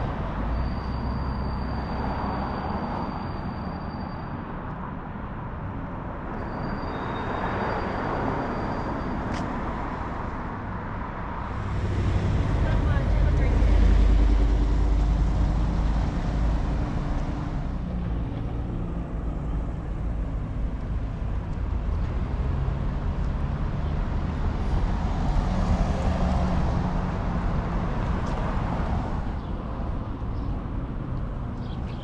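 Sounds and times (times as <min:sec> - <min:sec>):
cars passing close by: 0:00.0 - 0:32.0
vehicle engines running: 0:11.4 - 0:32.0.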